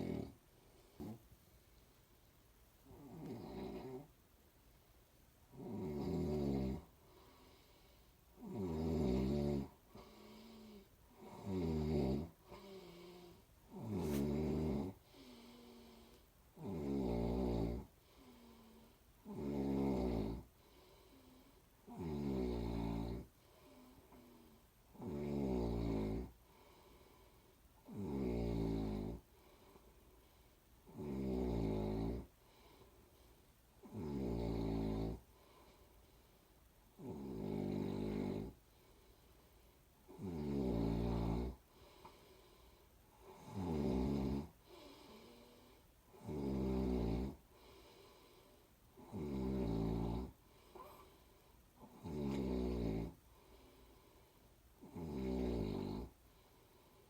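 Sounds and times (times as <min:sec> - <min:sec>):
person snoring: 0:00.0 - 0:00.4, 0:02.9 - 0:04.1, 0:05.5 - 0:07.6, 0:08.4 - 0:26.3, 0:27.8 - 0:29.2, 0:30.9 - 0:32.3, 0:33.8 - 0:35.2, 0:37.0 - 0:38.6, 0:40.1 - 0:41.6, 0:43.2 - 0:48.1, 0:49.0 - 0:51.1, 0:51.8 - 0:53.2, 0:54.8 - 0:56.2
faint breaths: 0:06.8 - 0:08.4, 0:09.6 - 0:11.5, 0:12.2 - 0:16.6, 0:17.7 - 0:19.3, 0:20.4 - 0:21.9, 0:22.9 - 0:24.9, 0:26.2 - 0:27.9, 0:29.2 - 0:30.9, 0:32.2 - 0:33.8, 0:35.2 - 0:37.0, 0:38.1 - 0:40.2, 0:40.9 - 0:43.6, 0:44.4 - 0:46.5, 0:47.2 - 0:54.9, 0:55.7 - 0:57.0.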